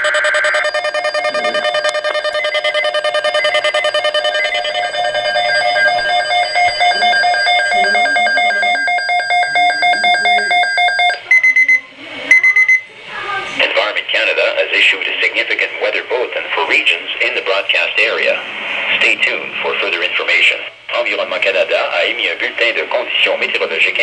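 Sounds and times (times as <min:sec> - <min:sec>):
pulsing electronic alarm tone: 0:00.0 - 0:12.8
emergency alert data burst: 0:00.0 - 0:12.9
short beeps: 0:00.0 - 0:12.9
person speaking: 0:00.8 - 0:10.8.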